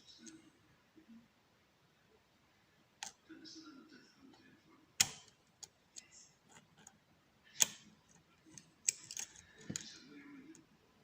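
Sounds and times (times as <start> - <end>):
lock pick clicking: 5.0 - 5.7, 8.6 - 9.9.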